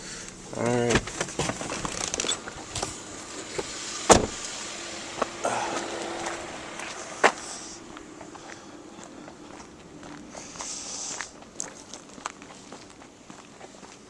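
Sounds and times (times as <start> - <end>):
rustling: 0.8 - 13.0
steady hiss: 2.3 - 9.0, 10.2 - 11.4.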